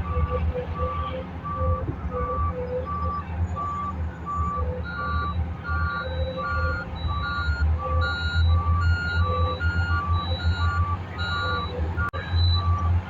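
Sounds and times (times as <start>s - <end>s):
diesel engines rumbling: 0.0s - 13.0s
backup alarm beeping: 3.6s - 12.9s.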